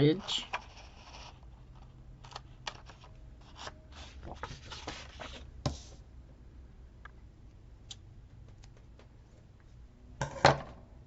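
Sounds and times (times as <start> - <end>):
paper rustling and scratching: 0.2 - 5.5.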